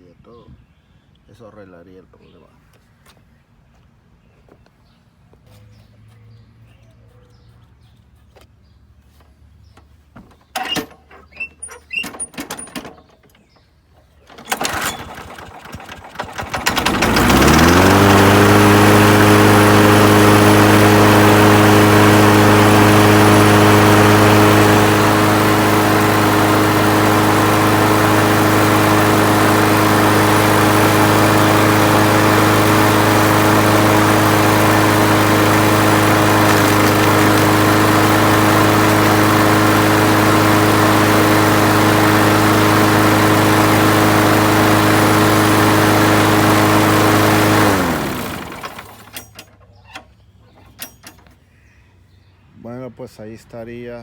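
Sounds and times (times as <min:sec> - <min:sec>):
lawn mower engine running: 0:09.8 - 0:51.4
pull-start rattle: 0:10.4 - 0:51.4.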